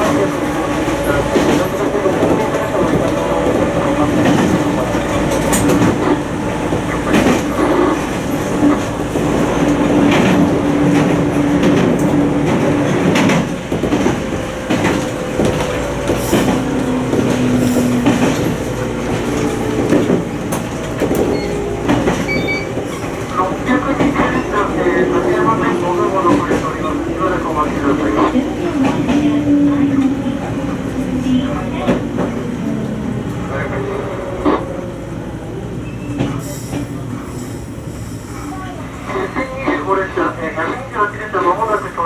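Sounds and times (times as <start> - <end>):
electric train rumble and hum: 0.0 - 42.0.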